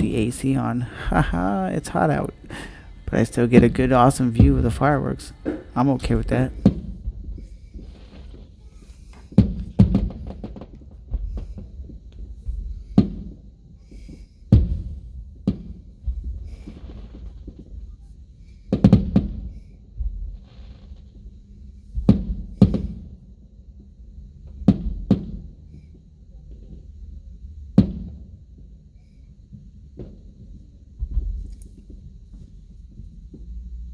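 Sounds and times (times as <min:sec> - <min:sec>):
fireworks booming: 0:00.0 - 0:23.4, 0:24.4 - 0:26.0, 0:27.7 - 0:28.4.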